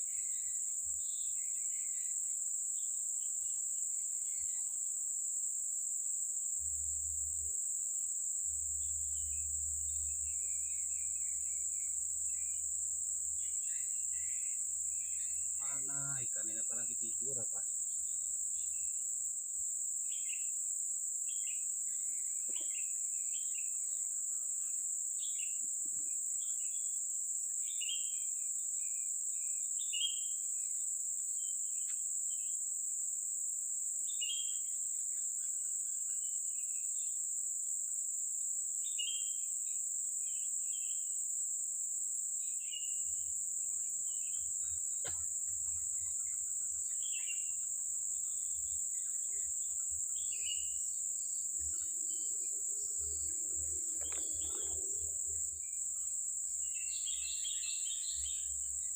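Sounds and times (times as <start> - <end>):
insects droning: 0.0 - 58.9
bird chirping: 42.5 - 58.9.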